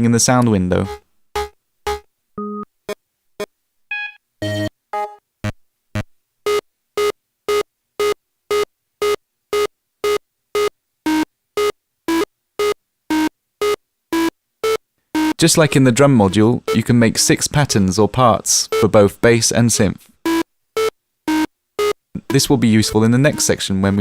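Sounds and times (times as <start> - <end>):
gated synthesizer notes: 0.0 - 2.6, 12.1 - 17.0, 20.2 - 24.0.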